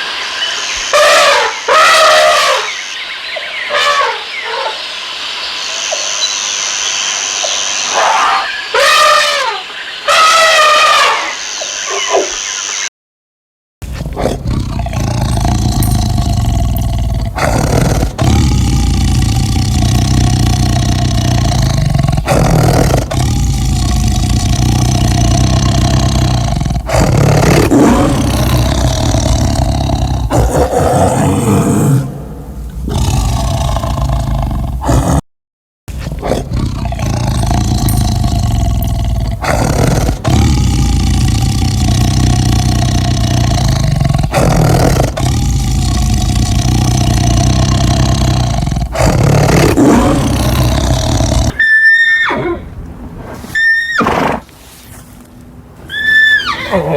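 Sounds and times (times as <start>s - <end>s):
big cat roaring: 13.9s - 35.2s, 36.0s - 51.6s.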